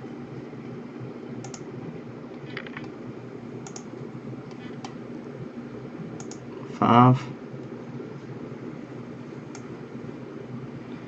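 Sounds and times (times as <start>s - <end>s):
steady low hum: 0.0s - 11.0s
computer mouse clicks: 1.4s - 1.7s, 3.6s - 3.9s, 6.2s - 6.4s.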